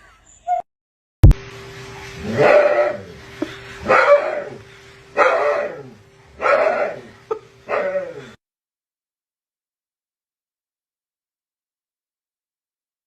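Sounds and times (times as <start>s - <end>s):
dog barking: 2.3s - 3.1s, 3.8s - 4.6s, 5.2s - 7.1s, 7.7s - 8.2s.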